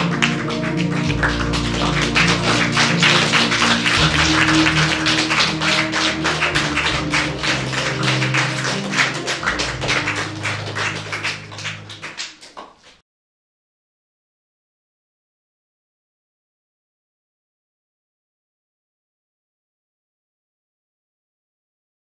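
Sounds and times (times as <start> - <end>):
lively music with fast percussion: 0.0 - 12.6.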